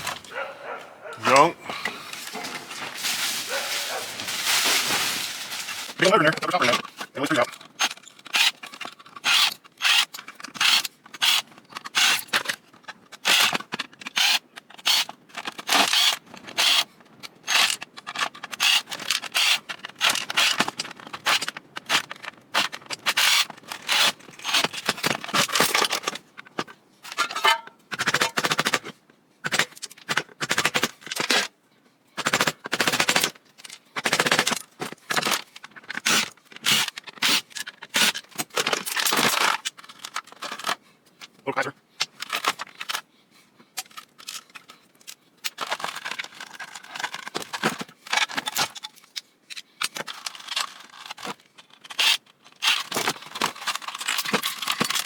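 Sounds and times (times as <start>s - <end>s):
food processor parts clattering: 1.3s - 31.5s, 32.2s - 40.8s, 42.0s - 43.0s, 43.8s - 49.1s, 49.8s - 55.0s.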